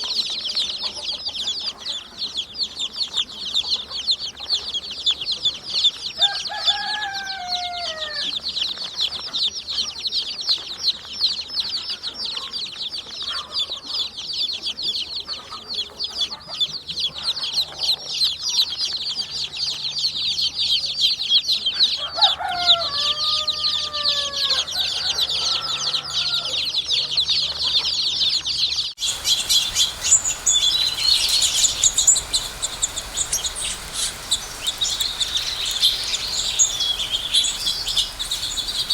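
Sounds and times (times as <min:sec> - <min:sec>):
varied birdsong: 0:00.0 - 0:38.9
small birds chirping: 0:26.5 - 0:38.9
lower falling bird calls: 0:29.0 - 0:38.9.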